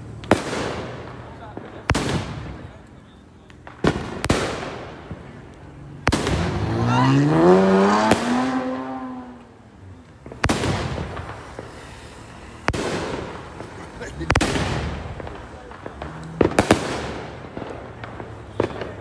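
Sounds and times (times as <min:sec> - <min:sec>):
firework bangs with crackling: 0:00.0 - 0:09.1, 0:10.2 - 0:19.0.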